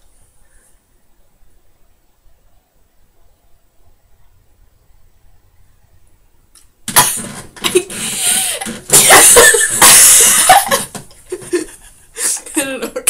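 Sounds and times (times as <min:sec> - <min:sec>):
loud laughter: 0:07.0 - 0:13.0.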